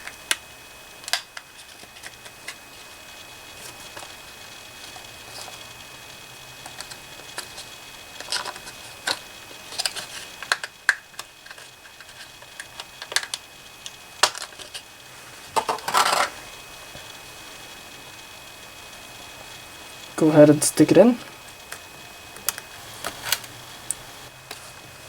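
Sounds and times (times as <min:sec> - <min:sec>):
packaging crackling: 0:06.6 - 0:14.9.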